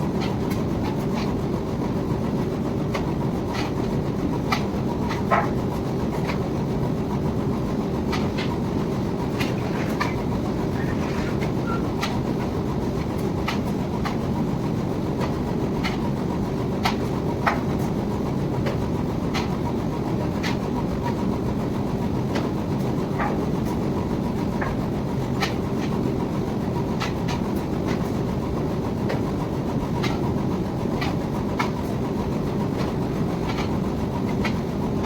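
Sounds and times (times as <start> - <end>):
wire drawing machine rumble: 0.0 - 16.5.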